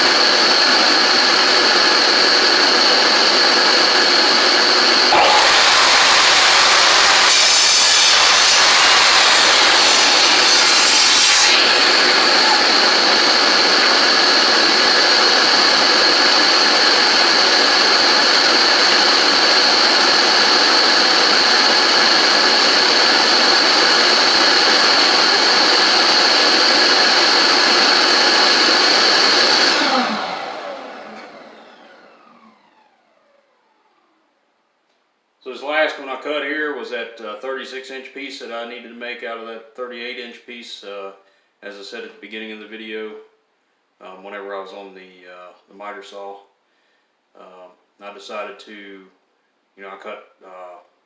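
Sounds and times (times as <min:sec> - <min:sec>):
saw cutting through board: 0:00.0 - 0:31.8
saw motor winding down: 0:00.0 - 0:34.3
table saw whining: 0:00.0 - 0:34.4.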